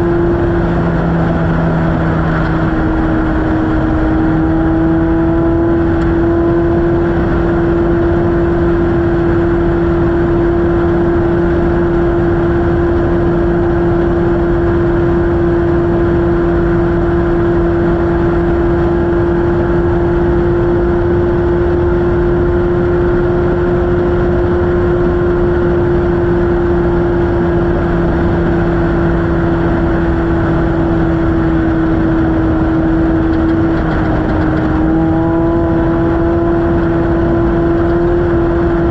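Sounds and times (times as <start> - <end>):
race car engine at speed: 0.0 - 38.9
wind noise: 0.0 - 38.9
car riding over rough ground: 30.2 - 38.9.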